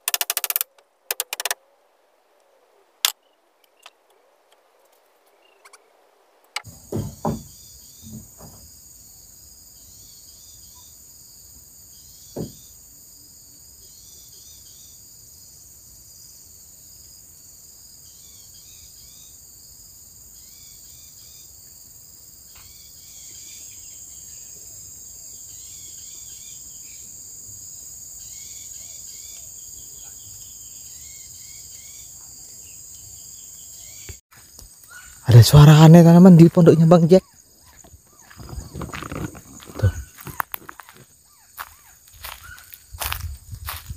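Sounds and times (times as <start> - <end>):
forest insects droning: 0.0 - 43.9
dull knocks: 6.6 - 8.7, 12.4 - 12.6.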